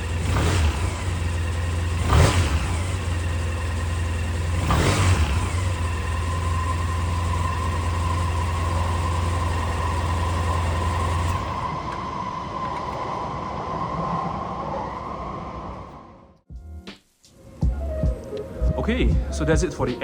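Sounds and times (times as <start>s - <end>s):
scooter engine idling: 0.0s - 11.9s.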